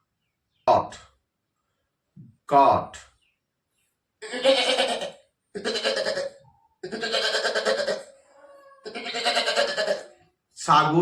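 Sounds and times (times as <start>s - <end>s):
goat bleating: 4.2s - 10.1s.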